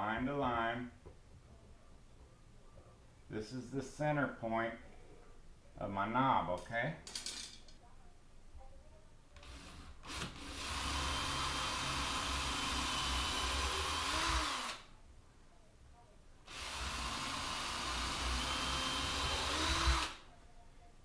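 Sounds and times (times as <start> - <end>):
power drill boring into wood: 9.4 - 14.8, 16.5 - 20.2.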